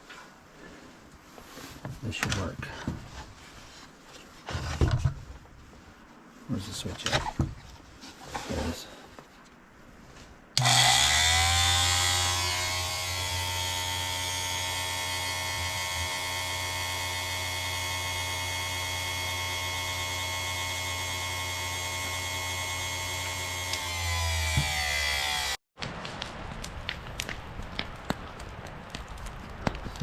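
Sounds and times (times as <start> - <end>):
electric motor whine and hum: 10.6 - 25.6.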